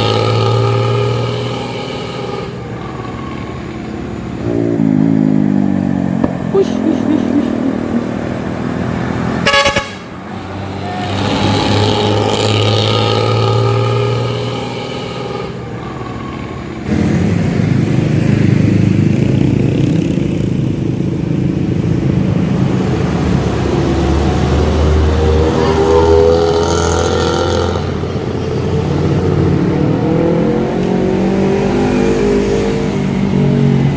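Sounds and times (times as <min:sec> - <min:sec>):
bus engine growling: 0:00.0 - 0:33.9
vehicle horn: 0:09.4 - 0:10.2.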